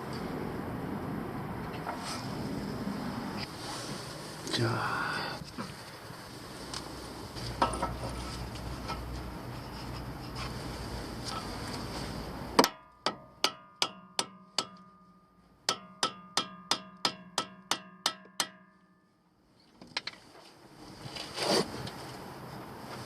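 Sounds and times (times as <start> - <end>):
hammer striking steel: 12.6 - 19.1.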